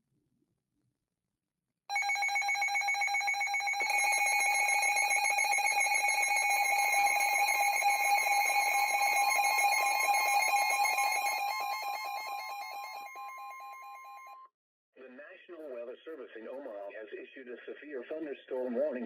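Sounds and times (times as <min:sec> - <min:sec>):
emergency alert tone: 0:03.6 - 0:14.4.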